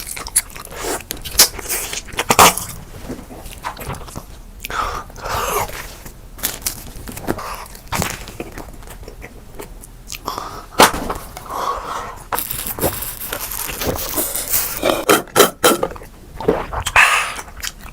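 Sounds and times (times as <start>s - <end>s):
chewing: 0.0s - 10.5s, 15.9s - 17.9s.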